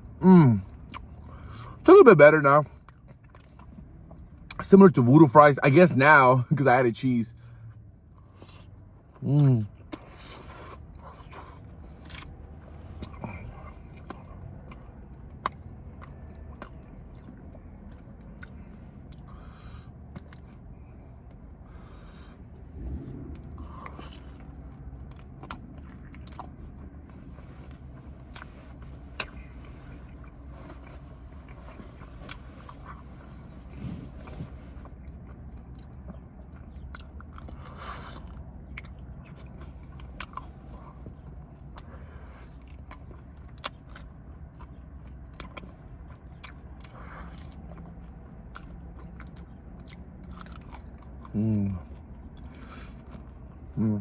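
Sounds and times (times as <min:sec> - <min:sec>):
person chewing food: 0:00.0 - 0:01.8, 0:02.6 - 0:04.6, 0:07.6 - 0:53.9
low hum: 0:16.0 - 0:42.4.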